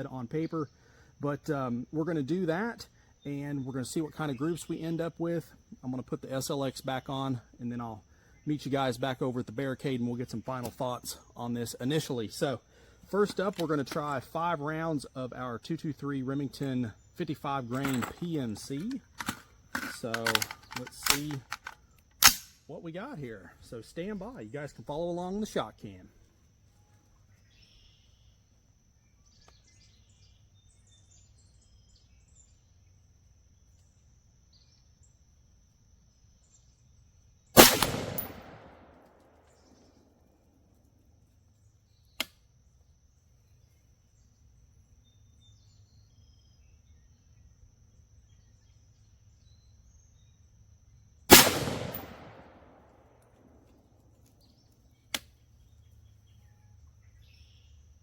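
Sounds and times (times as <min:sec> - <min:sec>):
rifle shots: 0:22.2 - 0:22.5, 0:37.6 - 0:39.3, 0:51.3 - 0:52.9
faint sharp click: 0:42.2 - 0:42.4, 0:55.1 - 0:55.3.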